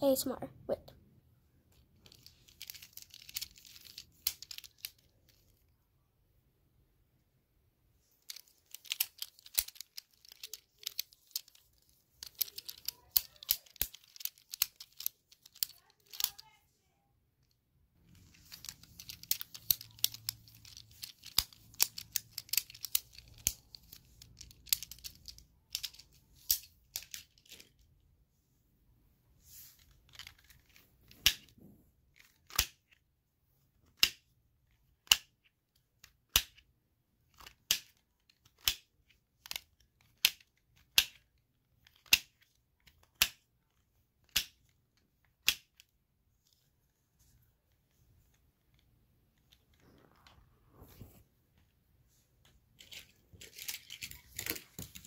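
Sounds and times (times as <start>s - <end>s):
fidget toy crackling clicks: 8.3s - 16.5s.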